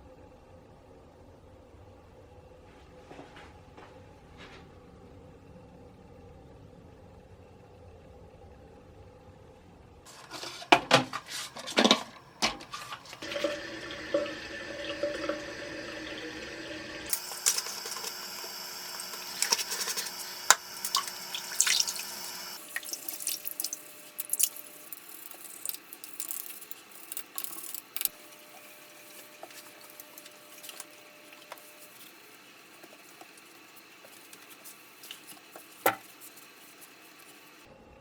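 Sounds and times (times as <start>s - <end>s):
kitchen tap running into sink: 13.2s - 28.6s.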